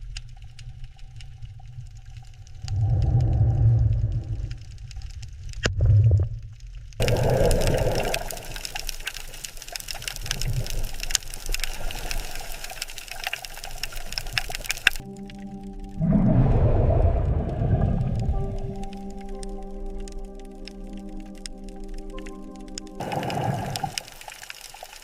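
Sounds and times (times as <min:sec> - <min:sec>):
rushing crackling water: 0:00.0 - 0:25.0
low rumble: 0:00.9 - 0:07.2, 0:14.9 - 0:23.1.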